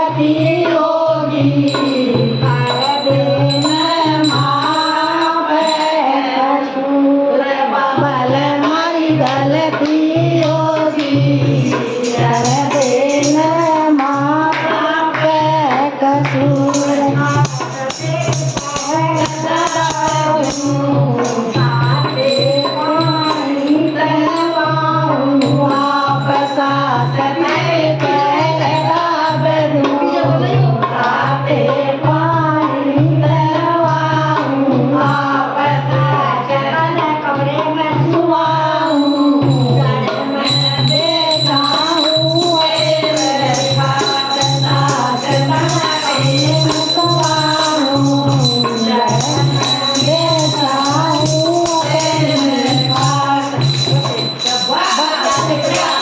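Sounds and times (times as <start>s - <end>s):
jingling percussion beat: 1.2s - 6.4s, 9.2s - 14.8s, 16.3s - 29.8s, 38.6s - 56.0s
voices singing folk melody: 38.2s - 56.0s.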